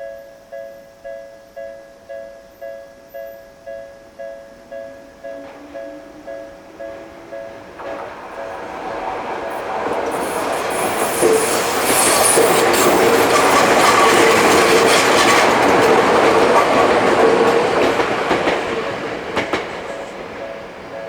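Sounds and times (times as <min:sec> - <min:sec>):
train wheels clattering over rail joints: 0:05.4 - 0:21.0
faint wheel squeal: 0:10.1 - 0:14.2.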